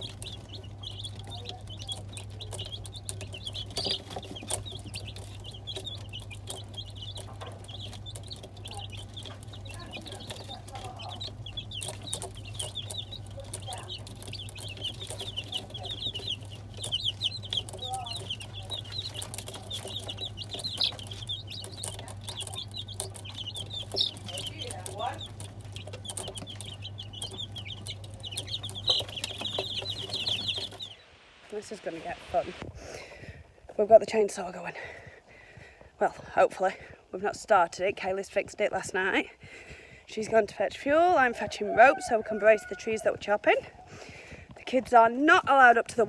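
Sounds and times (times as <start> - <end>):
steady low hum: 0.0 - 33.8
chicks peeping: 0.0 - 46.0.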